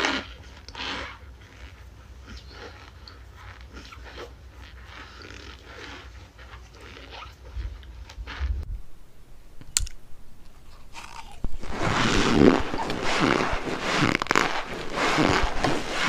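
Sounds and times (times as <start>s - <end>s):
crunchy chewing: 9.7s - 16.0s.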